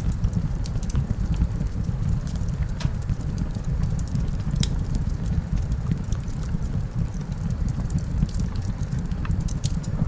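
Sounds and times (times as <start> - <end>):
campfire crackling and popping: 0.0 - 10.0.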